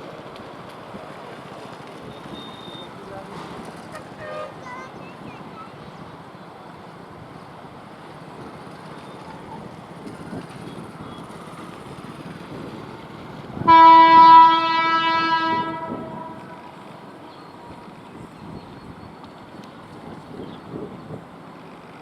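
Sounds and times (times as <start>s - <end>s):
locomotive horn blast: 3.9s - 4.6s, 13.6s - 16.9s.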